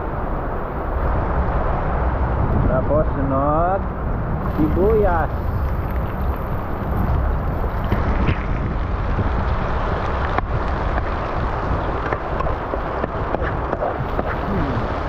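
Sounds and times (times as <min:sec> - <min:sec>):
oil popping and crackling: 0:04.4 - 0:15.0.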